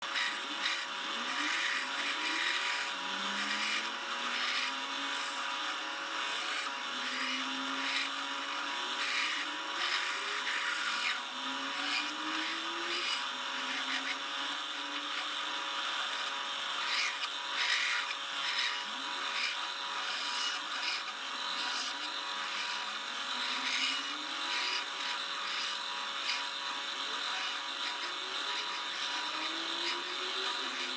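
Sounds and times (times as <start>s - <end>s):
electric saw cutting wood: 0.0s - 30.9s.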